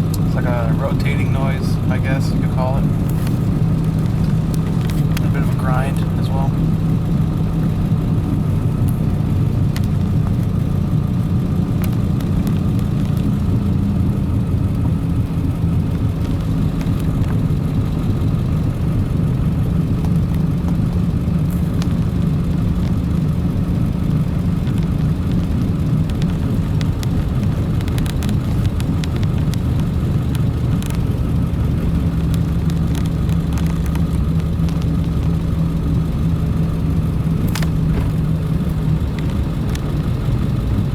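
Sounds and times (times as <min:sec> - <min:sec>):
engine and road noise: 0:00.0 - 0:40.9
low rotating drone with grinding: 0:00.0 - 0:40.9.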